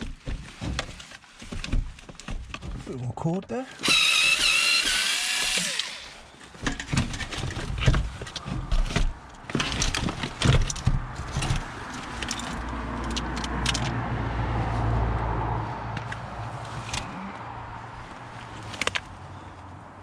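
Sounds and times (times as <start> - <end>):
scrap clicking and rattling: 0.0 - 2.9, 3.8 - 14.0
low engine hum: 6.7 - 20.0.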